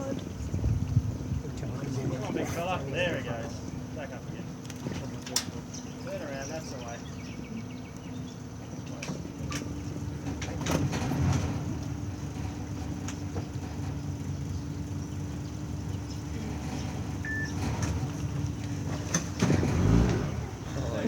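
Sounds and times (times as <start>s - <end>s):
boat engine idling: 0.0s - 21.0s.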